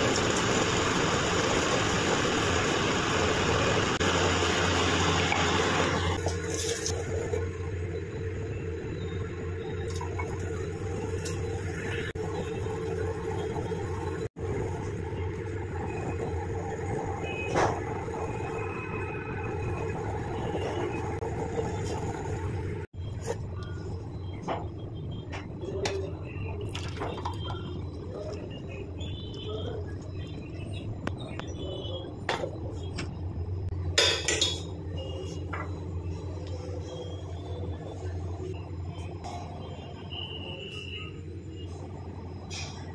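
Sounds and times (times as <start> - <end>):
metal utensils clinking on pot: 34.0 - 34.8.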